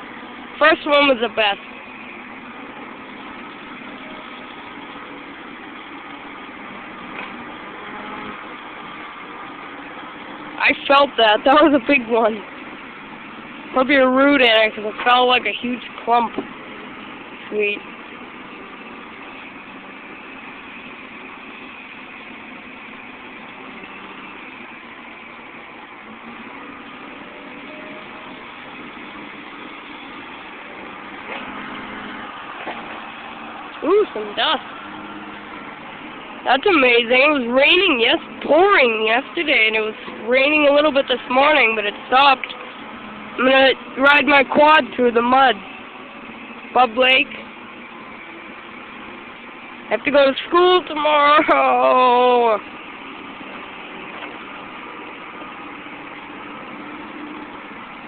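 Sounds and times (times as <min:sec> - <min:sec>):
excavator diesel engine running: 0:00.0 - 0:58.0.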